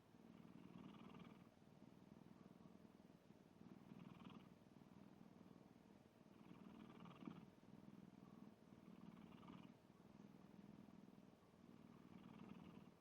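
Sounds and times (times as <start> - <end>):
cat snoring: 0.3 - 1.5, 3.6 - 5.7, 6.3 - 13.0.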